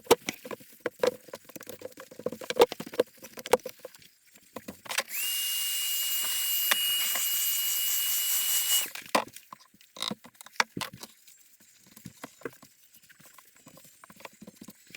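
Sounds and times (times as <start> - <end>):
power tool whining: 4.9 - 9.0.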